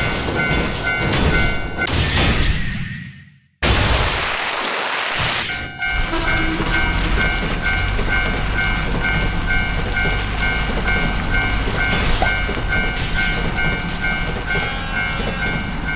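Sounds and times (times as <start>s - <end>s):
railroad crossing bell ringing: 0.0s - 1.9s, 5.5s - 15.9s
train passing rumble: 5.7s - 15.9s.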